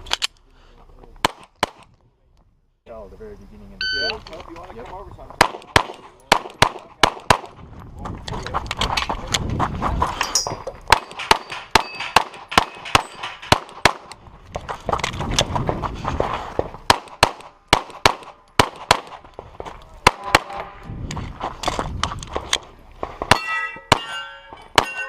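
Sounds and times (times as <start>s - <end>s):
pistol shots: 5.4s - 7.6s, 10.9s - 14.2s, 16.9s - 19.2s, 20.0s - 20.6s
steel targets clanging: 10.2s - 13.8s, 23.3s - 25.0s.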